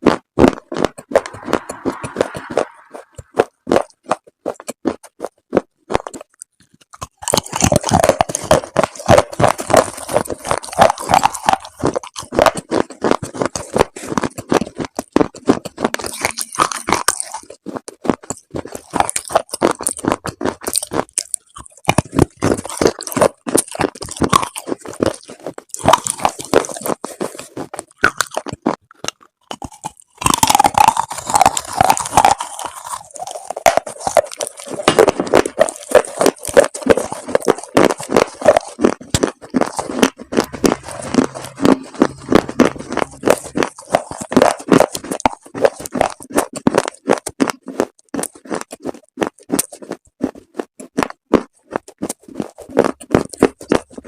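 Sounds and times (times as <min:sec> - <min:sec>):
chalk crunching being chewed: 0:00.0 - 0:54.0.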